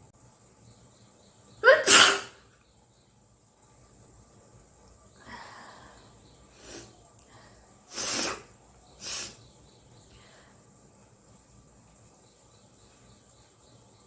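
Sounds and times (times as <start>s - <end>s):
woman sneezing: 1.6s - 2.4s.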